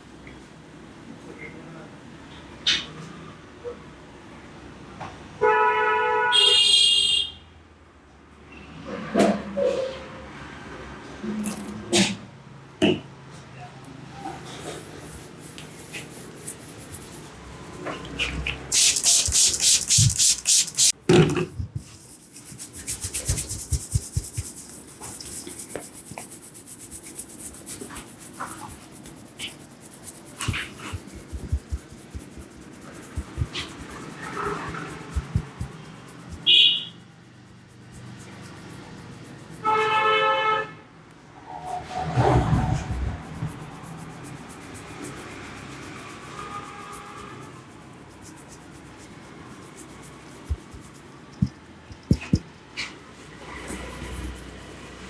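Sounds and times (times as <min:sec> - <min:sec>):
rubbing and clicks: 0:14.6 - 0:21.0, 0:21.6 - 0:39.8, 0:42.8 - 0:52.5, 0:53.5 - 0:55.0
hands slapping and patting head: 0:18.7 - 0:21.0, 0:21.8 - 0:36.5, 0:49.8 - 0:52.5.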